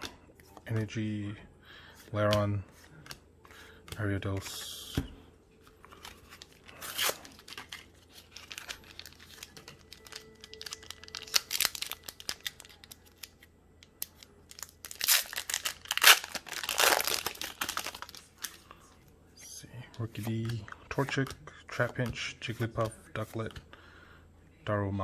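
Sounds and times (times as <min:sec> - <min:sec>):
foil wrapper tearing and crinkling: 0:06.4 - 0:13.3, 0:14.1 - 0:18.3.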